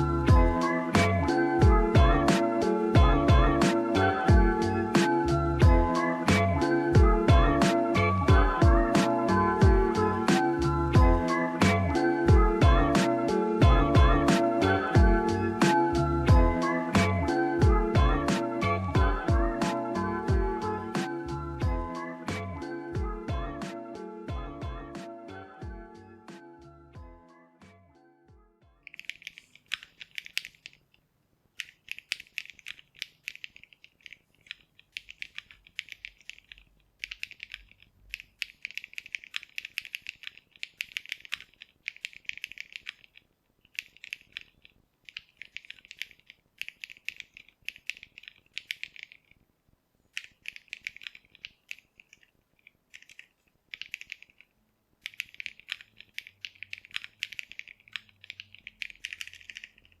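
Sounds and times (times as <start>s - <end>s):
typing on mechanical keyboard: 28.9s - 31.0s, 31.6s - 49.4s, 50.1s - 60.0s.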